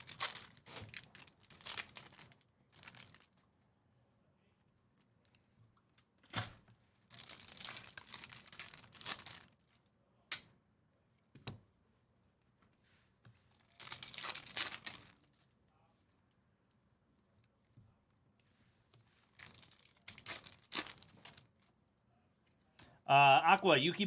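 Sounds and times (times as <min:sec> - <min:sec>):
card pack wrappers tearing: 0:00.0 - 0:03.3, 0:07.1 - 0:09.6, 0:13.6 - 0:15.3, 0:19.2 - 0:21.5.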